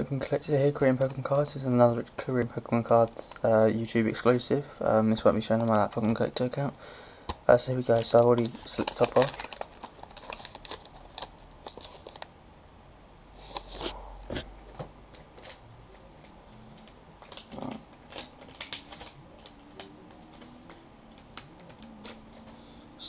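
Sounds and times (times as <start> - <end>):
cards and wrapper rustling: 2.8 - 3.8, 7.3 - 12.3, 13.4 - 23.0.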